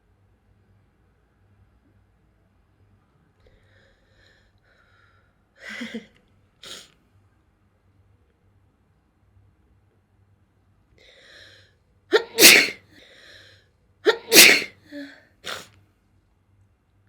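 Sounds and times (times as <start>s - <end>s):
person sneezing: 12.1s - 12.8s, 14.1s - 15.7s.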